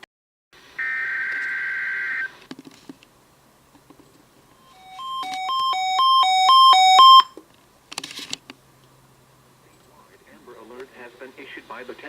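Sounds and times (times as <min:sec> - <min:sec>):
hi-lo two-tone alarm beep: 0:04.6 - 0:07.4.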